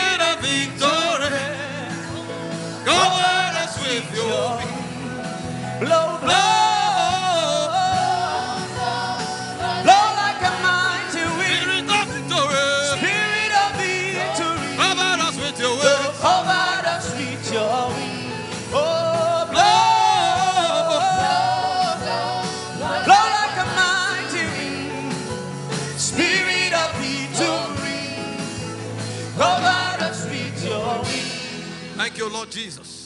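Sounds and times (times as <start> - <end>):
band playing steady beat: 0.0 - 33.0
person singing wordless phrases: 2.8 - 5.2, 5.8 - 25.2.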